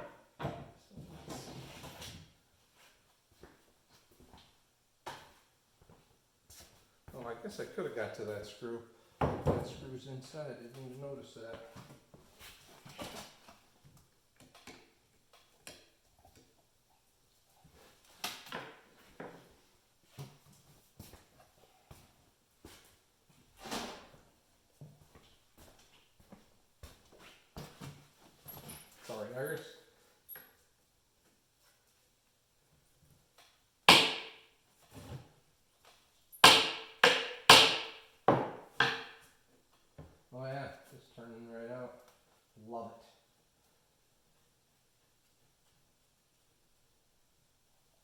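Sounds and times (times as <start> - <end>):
hammer striking metal: 33.9 - 34.4, 36.4 - 38.0.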